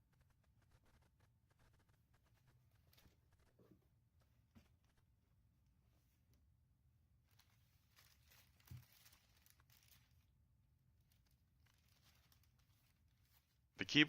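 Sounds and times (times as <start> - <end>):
faint rustles: 7.2 - 13.7.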